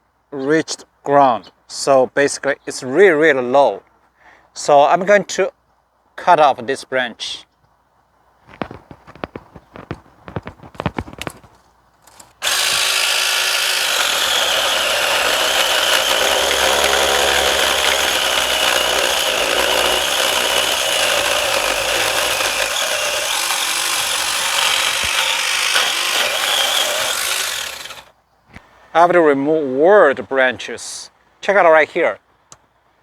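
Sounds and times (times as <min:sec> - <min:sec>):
power saw cutting branch: 0:12.1 - 0:28.1.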